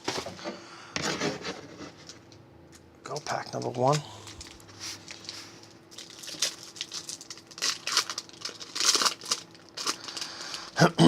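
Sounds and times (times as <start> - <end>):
foil wrapper tearing and crinkling: 3.2 - 10.8.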